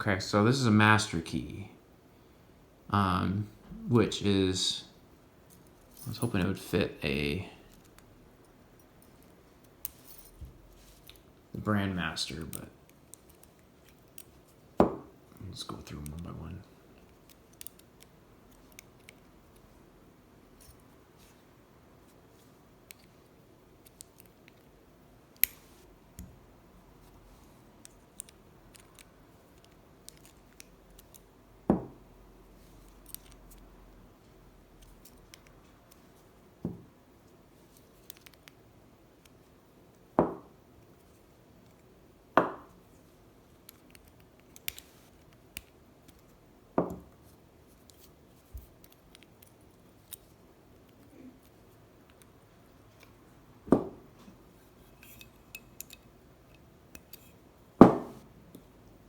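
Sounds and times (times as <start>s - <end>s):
keys clicking and clinking: 5.5s - 6.7s.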